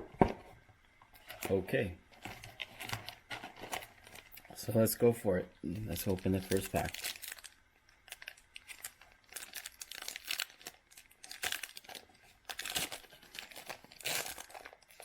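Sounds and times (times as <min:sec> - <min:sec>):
plastic wrapper crinkling and tearing: 0:01.2 - 0:05.0, 0:05.7 - 0:15.0.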